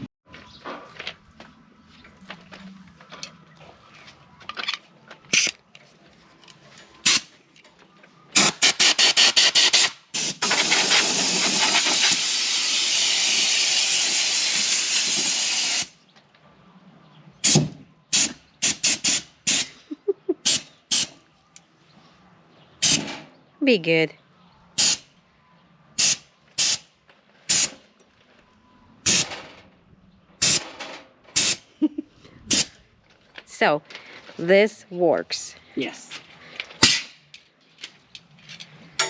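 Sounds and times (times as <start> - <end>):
compressed air blasts: 8.4 - 16.0, 17.4 - 19.8, 20.4 - 21.2, 22.8 - 23.2, 24.8 - 25.1, 26.0 - 26.9, 27.5 - 27.8, 29.0 - 29.3, 30.4 - 30.7, 31.4 - 31.7, 32.5 - 32.8.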